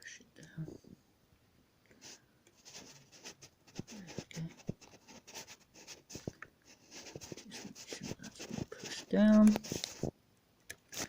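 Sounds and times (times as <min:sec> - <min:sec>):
hands rubbing scratchily: 0:02.0 - 0:10.1.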